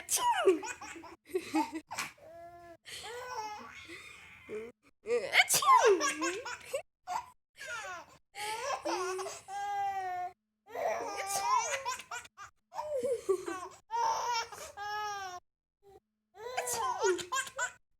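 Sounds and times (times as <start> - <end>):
baby laughing: 0.4 - 2.0, 5.8 - 9.4, 10.8 - 15.2, 16.6 - 17.8.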